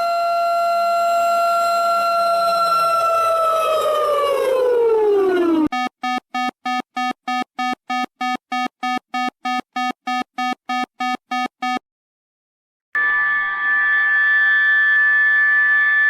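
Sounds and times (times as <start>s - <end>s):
electronic beeps: 5.7s - 11.8s.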